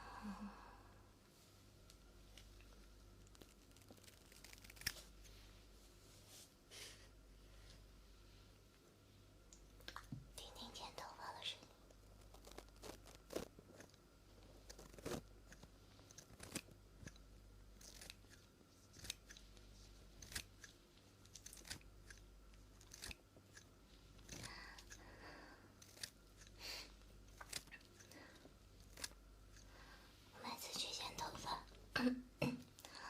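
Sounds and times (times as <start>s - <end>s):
soft rustle: 1.2s - 9.4s, 11.6s - 16.7s
scissors snipping hair: 3.4s - 5.0s, 14.7s - 17.2s, 17.8s - 19.4s, 20.2s - 22.2s, 22.8s - 25.0s, 25.8s - 26.6s, 27.3s - 28.2s.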